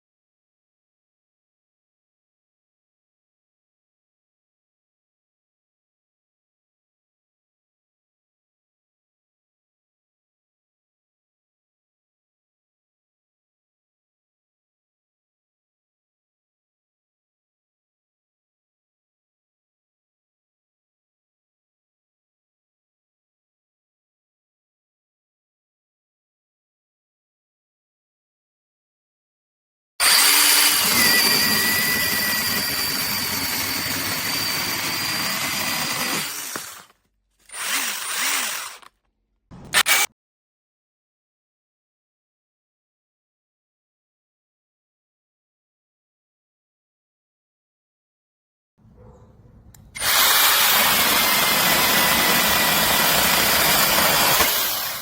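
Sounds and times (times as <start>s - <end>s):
mini chainsaw motor whine: 30.0s - 38.9s, 50.0s - 55.0s.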